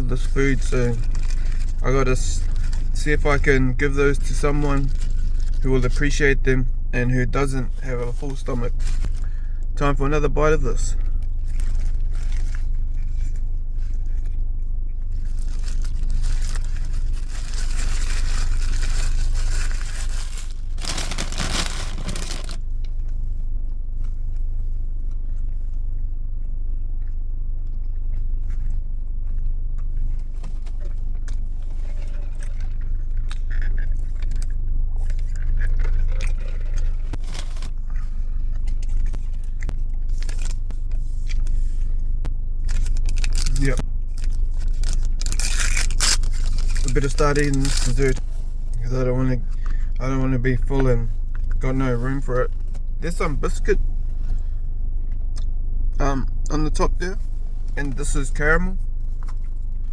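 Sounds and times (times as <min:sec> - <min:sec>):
paper wrapper rustling: 0:00.0 - 0:03.5, 0:04.1 - 0:06.2, 0:08.1 - 0:09.4, 0:15.1 - 0:22.6, 0:35.2 - 0:38.0, 0:38.7 - 0:41.8, 0:42.6 - 0:48.4
person chewing and crunching food: 0:00.0 - 0:58.0, 0:58.9 - 0:59.9
steady low hum: 0:00.0 - 0:59.9.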